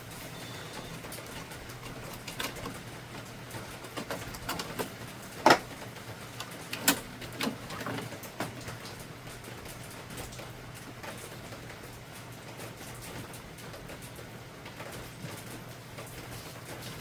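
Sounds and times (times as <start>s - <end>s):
plastic printer parts clicking: 0.9s - 2.9s, 3.5s - 8.6s.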